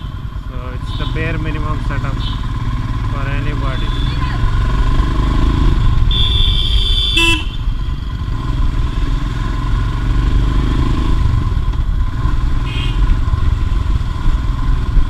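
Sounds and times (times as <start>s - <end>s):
motorcycle engine running: 0.0s - 15.0s
vehicle horn: 3.6s - 4.5s, 6.0s - 7.7s, 12.6s - 13.2s.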